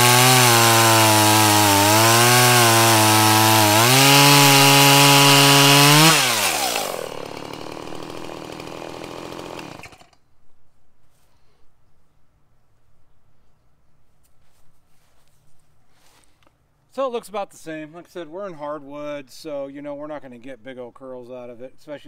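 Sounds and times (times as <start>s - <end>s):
chainsaw revving and idling: 0.0s - 10.2s.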